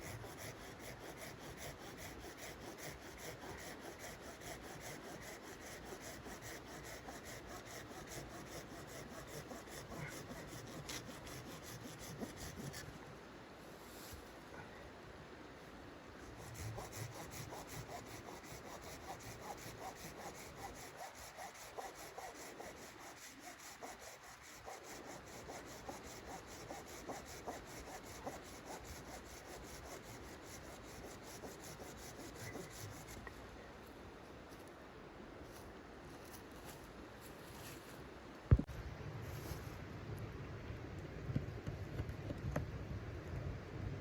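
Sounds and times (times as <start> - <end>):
hand saw cutting wood: 0.0 - 12.9, 16.3 - 33.2.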